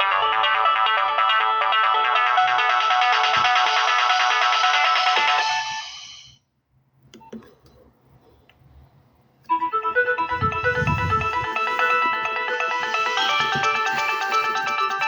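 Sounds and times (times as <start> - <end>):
ringtone melody: 0.0 - 6.2, 9.5 - 15.0
polyphonic ringtone: 9.5 - 15.0.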